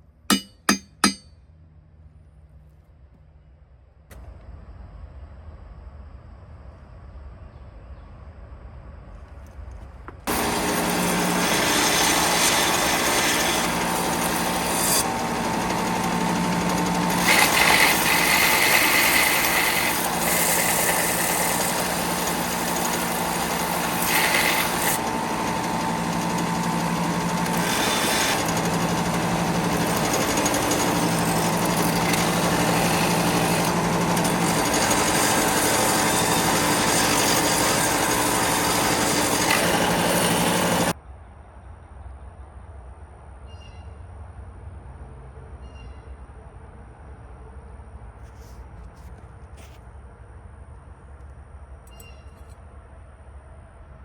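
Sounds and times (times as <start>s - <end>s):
power tool humming: 0.3s - 1.2s, 10.3s - 41.0s.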